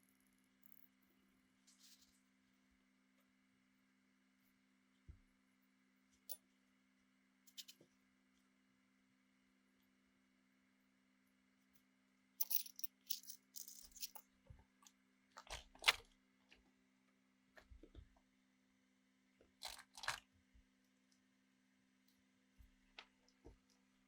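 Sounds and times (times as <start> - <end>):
faint low hum: 0.0 - 24.0
handling clicks scrapes and rustles: 12.4 - 14.2, 15.3 - 16.1, 19.6 - 20.3.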